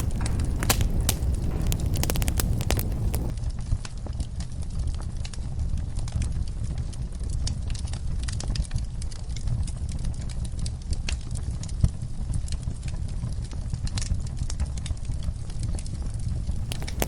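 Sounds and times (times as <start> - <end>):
low steady rumble: 0.0 - 3.3
wood fire crackling and popping: 0.0 - 3.3, 16.5 - 17.0.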